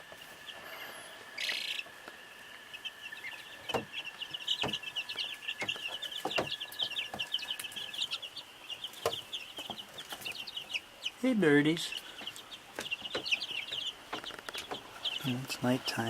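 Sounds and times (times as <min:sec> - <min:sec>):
chicks peeping: 0:00.0 - 0:16.0.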